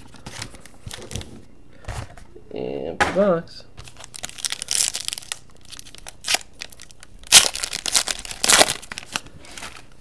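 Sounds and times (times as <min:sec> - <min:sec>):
card packaging crinkling and tearing: 0:00.0 - 0:01.3, 0:03.8 - 0:10.0.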